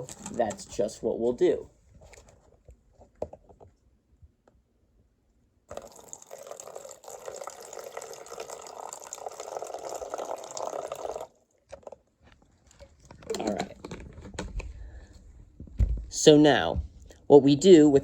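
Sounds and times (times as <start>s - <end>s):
water pouring into container: 5.7s - 11.4s.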